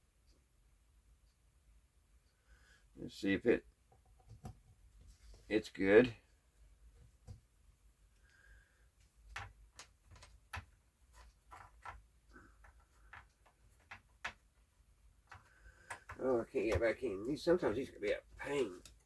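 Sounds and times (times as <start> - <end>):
light clicks and taps: 6.3 - 19.0.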